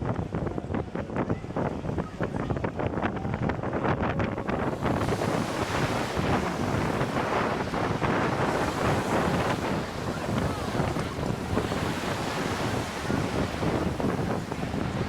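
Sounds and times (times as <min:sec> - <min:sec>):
wind buffeting microphone: 0:00.0 - 0:15.0
rushing water: 0:04.3 - 0:15.0.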